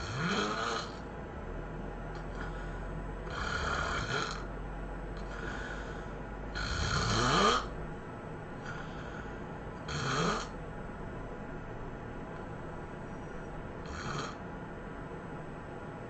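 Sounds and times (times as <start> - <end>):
person snoring heavily: 0.0 - 1.0, 2.2 - 4.5, 5.2 - 7.8, 8.6 - 10.6, 13.8 - 14.4
quiet breaths: 2.1 - 4.5, 5.1 - 7.8, 8.5 - 10.6.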